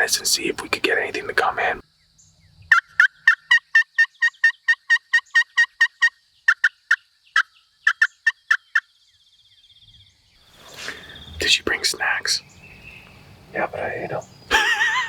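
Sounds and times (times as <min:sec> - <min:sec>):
turkey call yelping: 0:02.7 - 0:06.8, 0:07.8 - 0:08.8.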